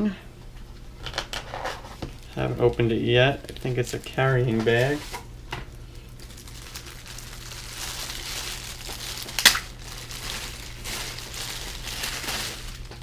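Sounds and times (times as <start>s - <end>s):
packaging crinkling and rustling: 3.5s - 13.0s.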